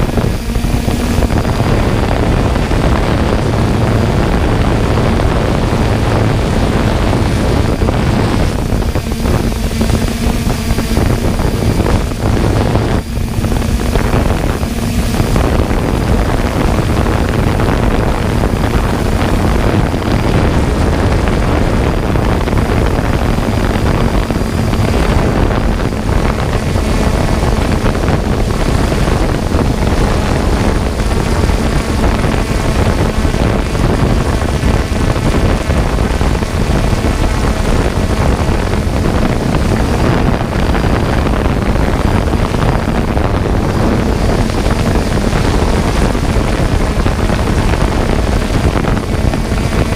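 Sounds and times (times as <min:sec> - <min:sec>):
drone motors humming: 0:00.0 - 0:49.9
wind rumbling on microphone: 0:00.0 - 0:49.9.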